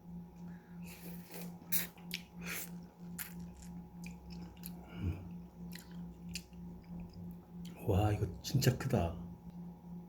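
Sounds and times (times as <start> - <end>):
wet mouth noises eating fruit: 0.8 - 7.8.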